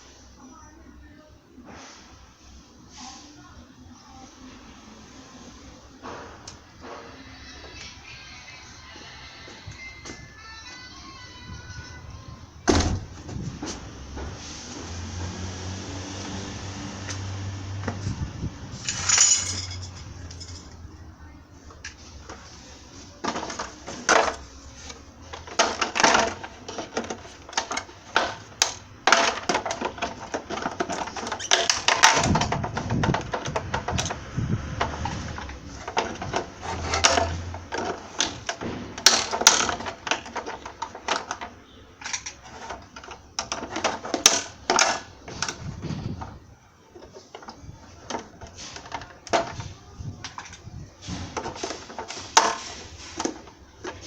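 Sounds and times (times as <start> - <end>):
hard objects clattering: 12.7 - 20.9, 21.7 - 54.0.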